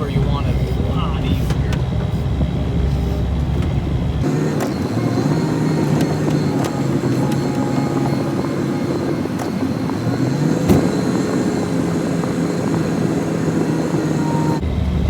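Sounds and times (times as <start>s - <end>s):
diesel engine under load: 0.0s - 15.0s.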